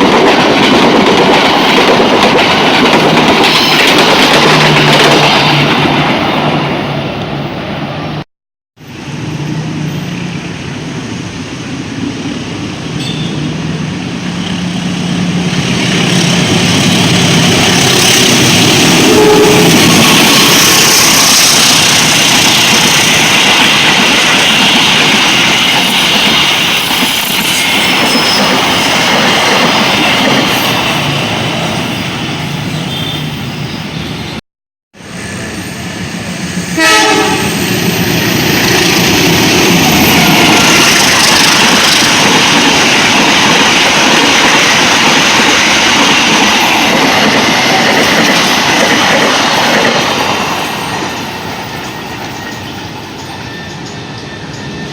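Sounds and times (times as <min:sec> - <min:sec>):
train wheels clattering on rails: 0:00.0 - 0:06.6, 0:15.5 - 0:31.3, 0:38.2 - 0:54.9
train horn blast: 0:19.0 - 0:20.0, 0:36.7 - 0:37.6.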